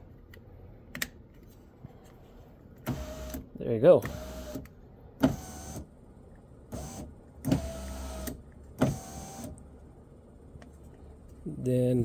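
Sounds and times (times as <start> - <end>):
power window motor running: 2.9 - 3.4, 4.1 - 4.6, 5.2 - 5.9, 6.8 - 9.6.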